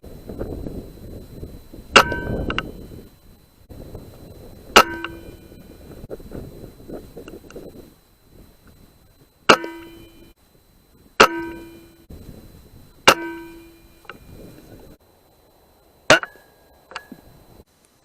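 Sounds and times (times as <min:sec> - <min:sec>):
ringing metallic clang: 0:01.9 - 0:02.9, 0:04.7 - 0:05.8, 0:09.5 - 0:10.4, 0:11.2 - 0:12.1, 0:13.0 - 0:14.4, 0:16.1 - 0:17.3
air rifle shots: 0:04.8 - 0:05.4.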